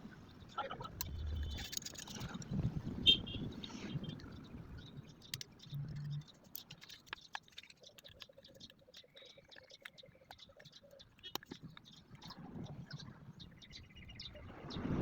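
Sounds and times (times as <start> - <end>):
small metal parts clicking: 1.0 - 2.5, 5.2 - 12.0.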